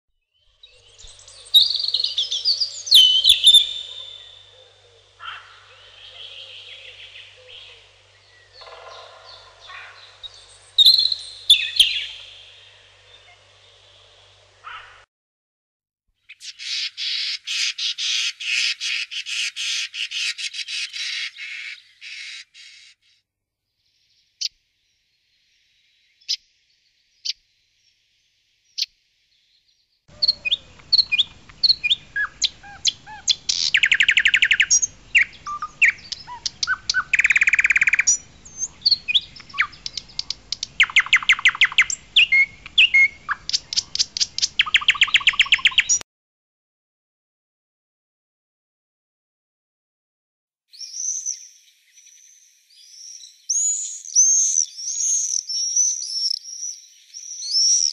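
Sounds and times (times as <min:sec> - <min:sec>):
songbirds chirping: 0:00.2 - 0:15.1, 0:16.2 - 0:46.0, 0:50.8 - 0:57.9
bird whistles and trills: 0:00.7 - 0:04.6, 0:10.8 - 0:12.3, 0:30.2 - 0:46.0, 0:50.7 - 0:57.9.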